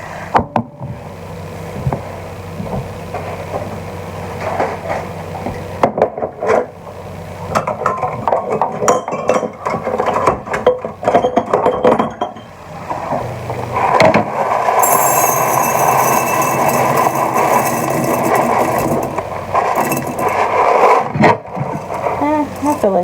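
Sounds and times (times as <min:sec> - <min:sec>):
kitchenware clinking and rattling: 0:07.9 - 0:12.4, 0:14.8 - 0:20.6, 0:21.3 - 0:23.0.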